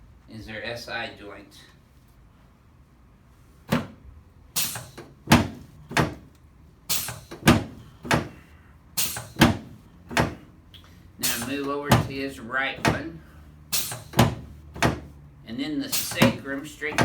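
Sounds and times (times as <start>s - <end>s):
adjusting table thuds: 3.6s - 6.3s, 7.0s - 8.4s, 9.1s - 10.5s, 11.3s - 12.2s, 12.8s - 13.2s, 13.8s - 15.2s, 16.0s - 17.0s.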